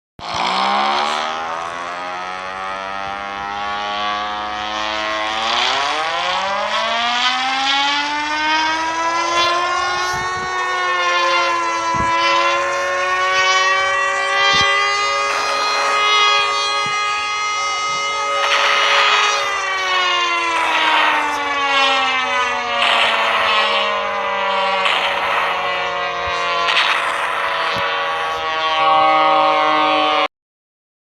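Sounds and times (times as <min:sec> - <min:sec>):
gliding tone: 0:00.2 - 0:30.2
droning alarm siren: 0:00.2 - 0:30.3.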